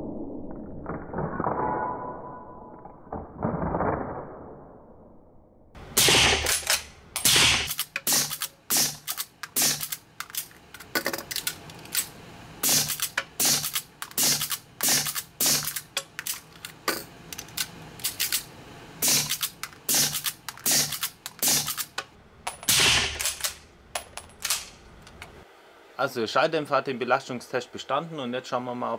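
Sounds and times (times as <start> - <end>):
rapid suppressed rifle shots: 6.0 - 10.0, 12.6 - 15.8, 19.0 - 21.9, 22.7 - 23.6.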